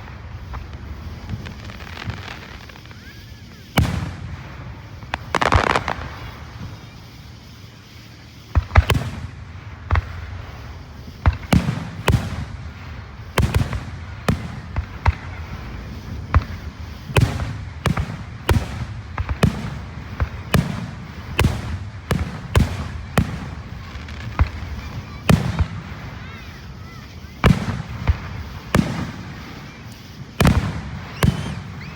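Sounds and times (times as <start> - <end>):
fireworks banging: 0.0 - 31.9.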